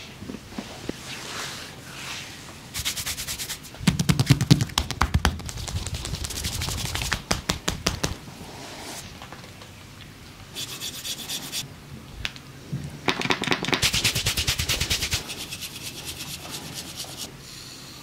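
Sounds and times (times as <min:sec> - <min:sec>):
soft rubbing: 0:00.5 - 0:04.2, 0:10.6 - 0:11.6, 0:13.8 - 0:17.3
heavier thuds: 0:03.8 - 0:05.5
massage slaps on body: 0:03.8 - 0:08.2.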